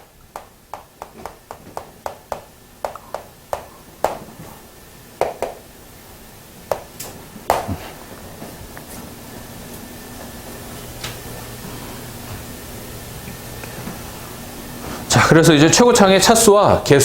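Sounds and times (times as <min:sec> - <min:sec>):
faint steady hum: 0:00.0 - 0:17.0
writing tool tapping on board: 0:00.4 - 0:04.3, 0:05.2 - 0:05.6.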